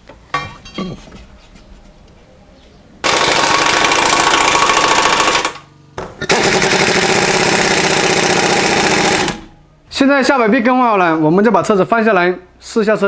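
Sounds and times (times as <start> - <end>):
impact wrench running: 3.0 - 9.5.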